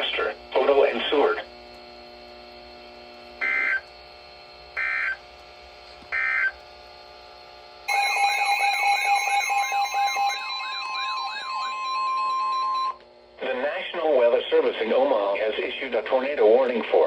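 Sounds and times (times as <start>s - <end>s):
harsh data tone bursts: 3.4s - 3.8s, 4.8s - 5.2s, 6.1s - 6.6s, 7.9s - 13.0s
warbling alarm: 3.4s - 5.2s, 6.1s - 6.6s, 7.9s - 13.0s
steady attention tone: 7.9s - 13.0s.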